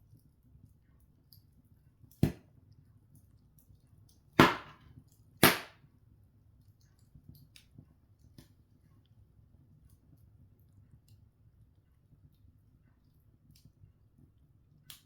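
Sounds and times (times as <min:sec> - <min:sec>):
fire crackling: 0:00.0 - 0:15.0
sharp loud pops of fire: 0:04.4 - 0:04.8, 0:05.4 - 0:05.8.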